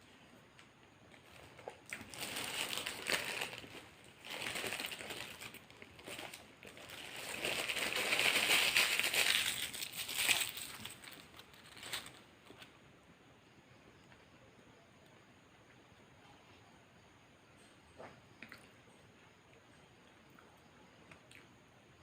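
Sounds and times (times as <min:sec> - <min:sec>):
paper wrapper crinkling: 0:01.2 - 0:12.7.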